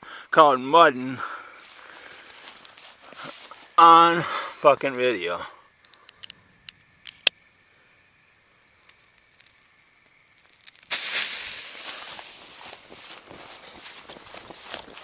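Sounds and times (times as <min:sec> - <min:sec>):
firework fuse hissing and spitting: 0:08.9 - 0:15.0.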